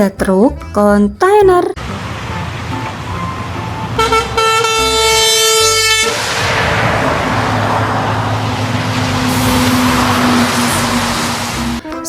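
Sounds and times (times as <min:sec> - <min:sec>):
truck air horn chord: 0:01.8 - 0:12.0
rushing hiss with low hum: 0:06.0 - 0:11.8.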